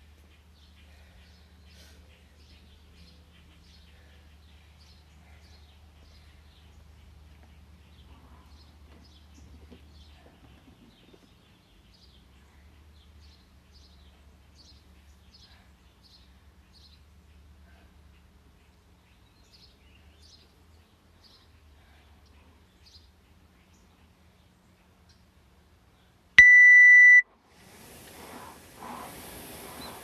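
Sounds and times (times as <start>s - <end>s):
birds chirping: 0.2s - 25.2s.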